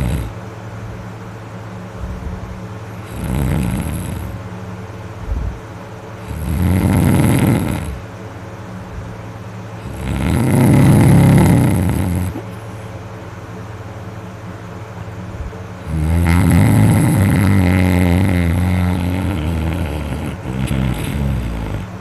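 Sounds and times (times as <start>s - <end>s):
man snoring loudly: 0.0s - 0.4s, 2.9s - 4.4s, 6.2s - 8.0s, 9.8s - 12.5s, 15.8s - 22.0s
steady low hum: 0.0s - 22.0s.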